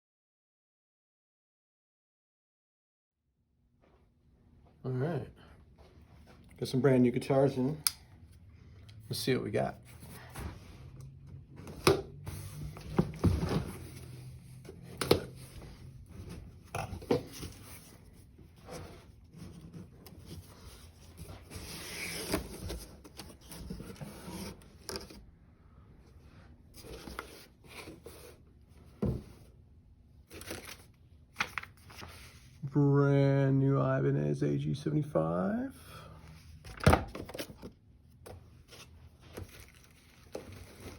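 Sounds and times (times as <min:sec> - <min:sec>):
cardboard scraping and rubbing: 0:12.2 - 0:25.2.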